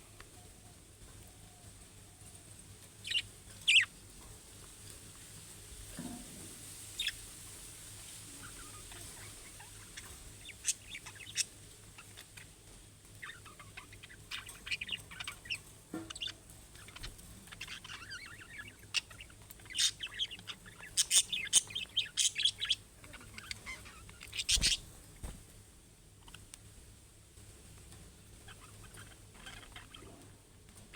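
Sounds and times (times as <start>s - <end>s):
budgerigars chirping: 3.0s - 3.9s, 6.9s - 7.2s, 8.4s - 12.5s, 13.2s - 24.9s, 28.4s - 30.1s.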